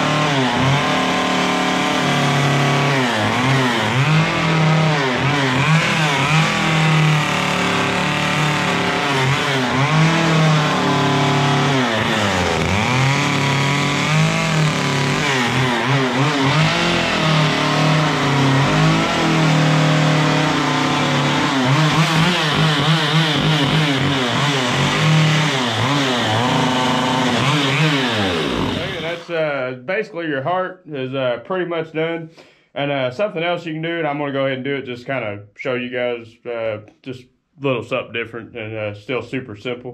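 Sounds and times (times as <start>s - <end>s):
chainsaw cutting wood: 0.0s - 29.3s.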